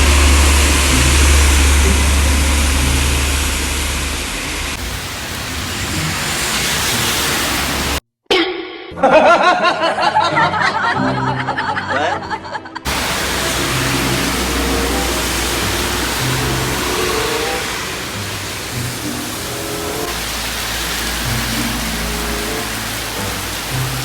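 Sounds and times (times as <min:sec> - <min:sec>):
heavy vehicle engine rumble: 0:00.0 - 0:08.0, 0:12.9 - 0:24.0.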